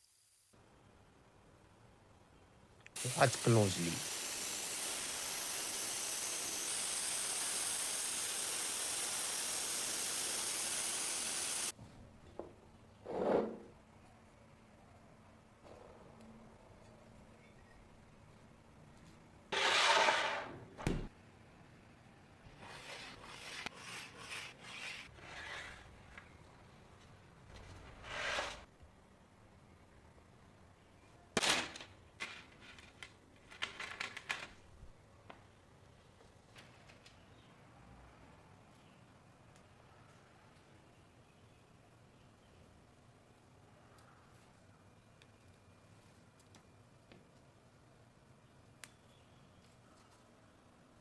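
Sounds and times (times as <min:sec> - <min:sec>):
spray paint hissing: 0:03.0 - 0:11.7.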